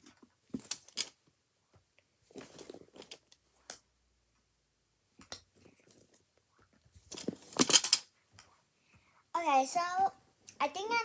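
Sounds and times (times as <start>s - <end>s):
rustling of small objects: 0.0s - 1.4s, 2.2s - 3.8s, 5.4s - 8.6s.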